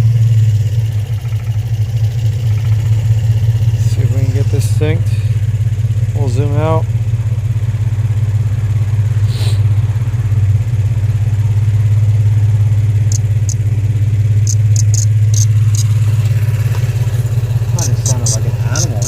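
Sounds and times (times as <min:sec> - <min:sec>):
car engine idling roughly: 0:00.0 - 0:19.0.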